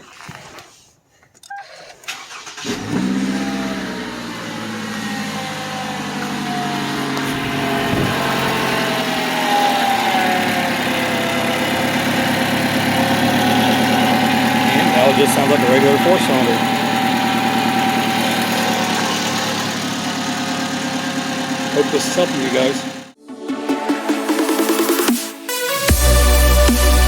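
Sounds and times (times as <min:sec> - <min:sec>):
car engine starting and idling: 0:02.0 - 0:23.2.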